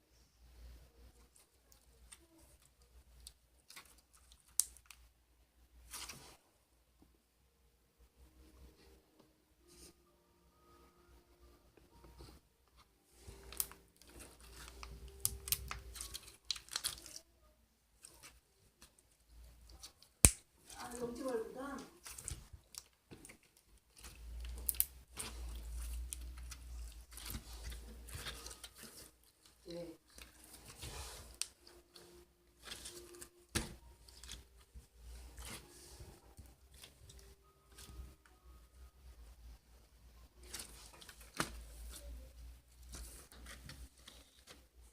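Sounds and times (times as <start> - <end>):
slime squishing and crackling: 1.3 - 5.1, 13.2 - 38.2, 40.4 - 44.9.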